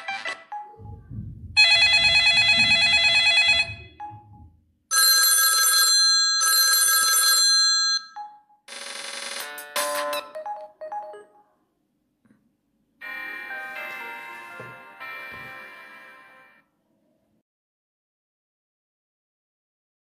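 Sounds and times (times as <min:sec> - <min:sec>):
phone ringtone ringing: 0:01.6 - 0:11.5.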